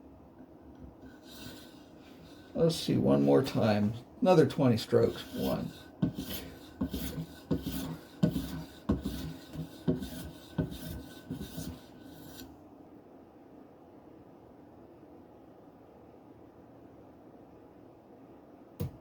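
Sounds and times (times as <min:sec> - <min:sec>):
knife rasping on strop: 0:01.0 - 0:02.6, 0:04.9 - 0:12.5.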